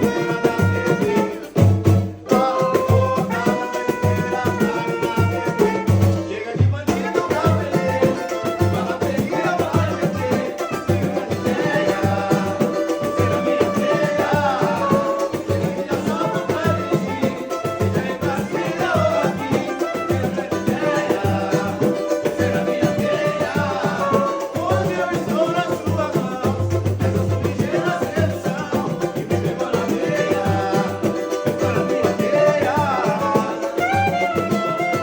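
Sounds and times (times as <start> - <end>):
dense percussion: 0.0 - 35.0
person singing: 2.3 - 35.0.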